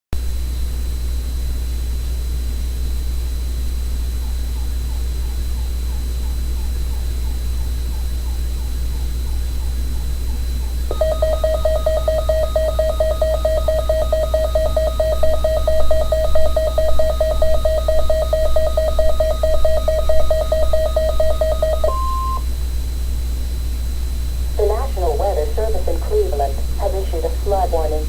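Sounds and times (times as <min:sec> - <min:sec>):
fast-pulsing alert beep: 0:10.9 - 0:22.4
high steady beep: 0:10.9 - 0:22.5.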